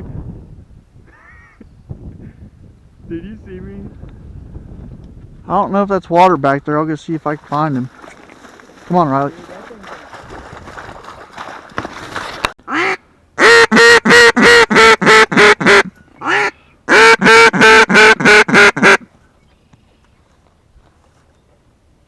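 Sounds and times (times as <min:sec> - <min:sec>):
duck call quacks: 0:01.1 - 0:01.6, 0:12.7 - 0:19.0.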